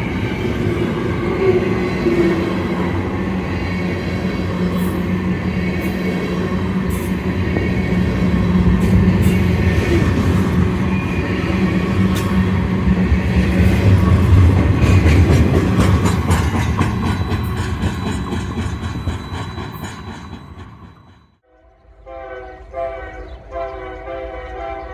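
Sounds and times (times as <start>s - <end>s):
diesel locomotive engine drone: 0.0s - 24.9s
train wheels clicking over rail joints: 4.3s - 21.4s.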